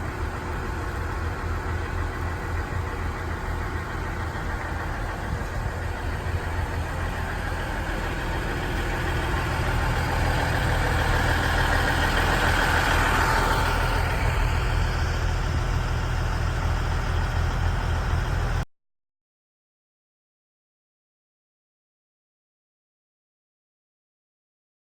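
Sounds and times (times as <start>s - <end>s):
diesel railcar engines running: 0.0s - 18.7s.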